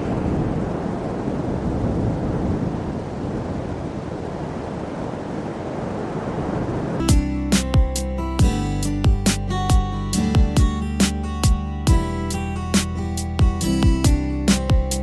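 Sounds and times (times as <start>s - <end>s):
steady rushing outdoor noise: 0.0s - 7.1s
plucked acoustic guitar music: 7.0s - 15.0s.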